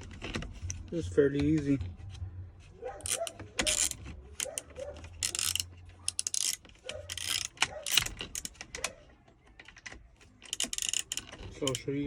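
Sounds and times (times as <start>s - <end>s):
ratchet wrench clicking: 3.0s - 8.5s, 10.4s - 11.8s.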